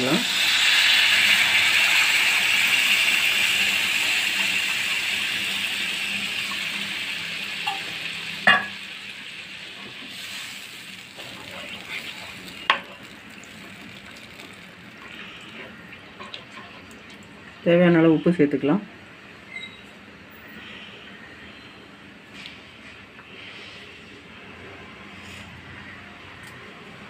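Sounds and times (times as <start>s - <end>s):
liquid sizzling in hot oil: 0.0s - 17.2s.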